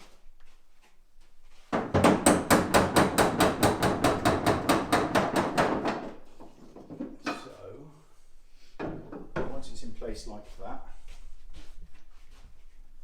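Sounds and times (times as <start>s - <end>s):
rapid wooden knocking: 2.0s - 6.2s.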